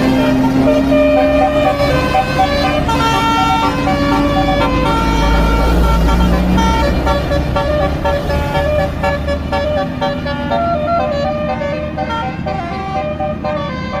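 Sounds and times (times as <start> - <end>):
low engine rumble: 0.0 - 14.0
musical bus horn melody: 0.0 - 14.0.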